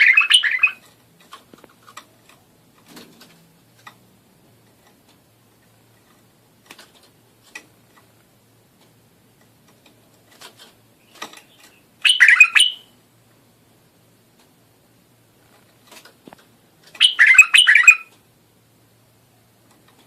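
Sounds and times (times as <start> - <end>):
bulbul chirps: 11.5 - 13.0.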